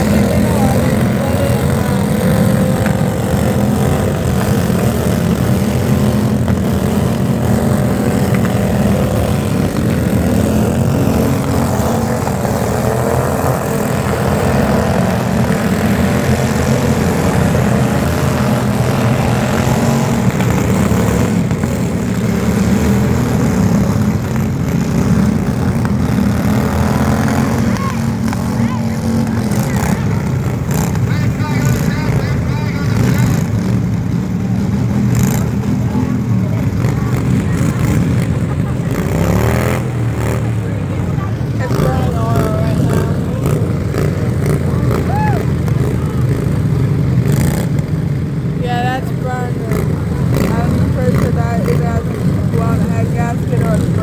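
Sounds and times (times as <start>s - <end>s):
loud engine running: 0.0s - 54.0s.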